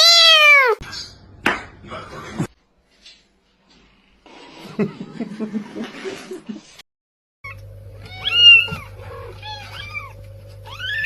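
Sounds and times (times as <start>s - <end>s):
cat meowing: 0.0s - 0.8s, 7.5s - 11.0s
steady background hum: 7.5s - 11.0s.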